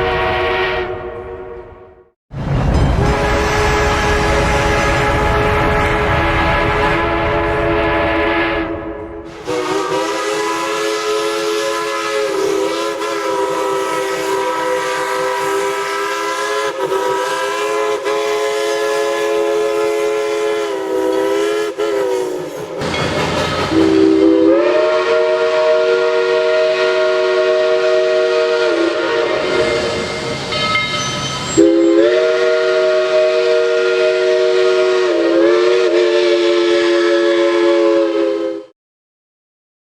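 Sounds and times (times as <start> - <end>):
steam locomotive whistle: 0.0 - 2.0, 3.0 - 23.0, 23.6 - 38.8
steam hissing: 9.3 - 25.1, 27.0 - 37.2.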